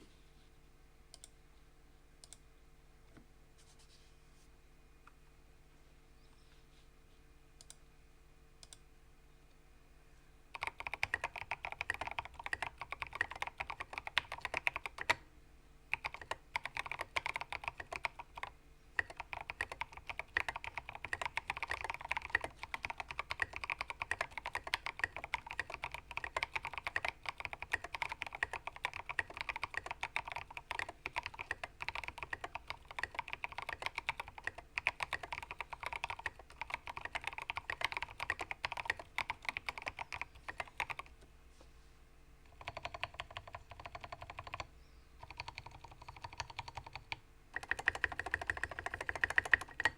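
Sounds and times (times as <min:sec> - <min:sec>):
fast typing on mechanical keyboard: 0:10.6 - 0:15.2, 0:15.9 - 0:41.1, 0:42.5 - 0:49.9.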